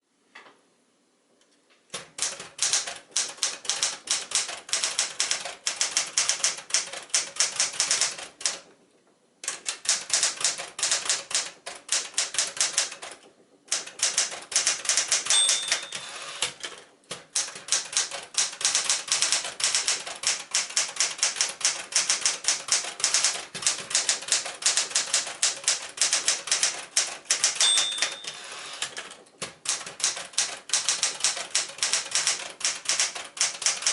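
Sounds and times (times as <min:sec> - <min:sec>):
typewriter key strikes: 0:01.9 - 0:08.6, 0:09.4 - 0:33.9
typewriter bell ding: 0:15.0 - 0:16.5, 0:27.4 - 0:28.8.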